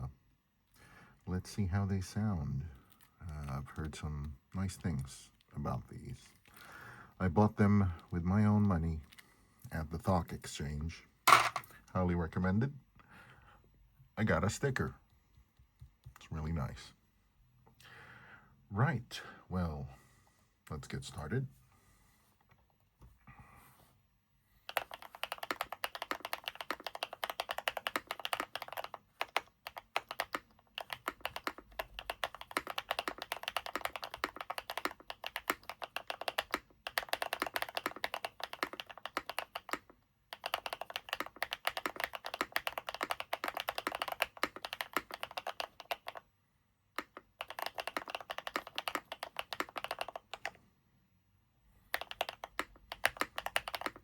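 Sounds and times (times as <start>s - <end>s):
mechanical keyboard typing: 24.7s - 46.3s, 47.0s - 50.6s, 51.9s - 54.0s.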